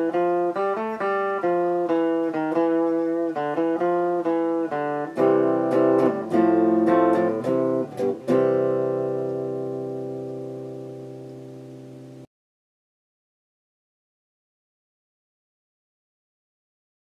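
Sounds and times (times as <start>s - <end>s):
electric guitar playing: 0.0s - 12.2s.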